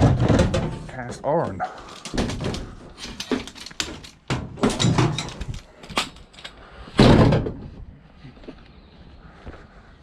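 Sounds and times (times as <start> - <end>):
metal crashing: 0.0 - 1.1, 2.0 - 5.5.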